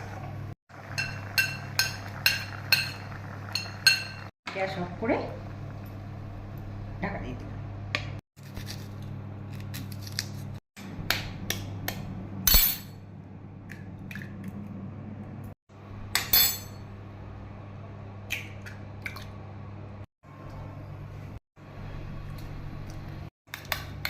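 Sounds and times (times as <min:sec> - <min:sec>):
metal utensils clinking on cookware: 0:16.2 - 0:16.8.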